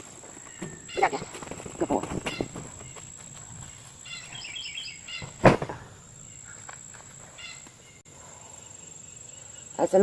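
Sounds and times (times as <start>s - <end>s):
bird chirping: 1.8s - 10.0s
box of books thumping down: 5.2s - 5.8s.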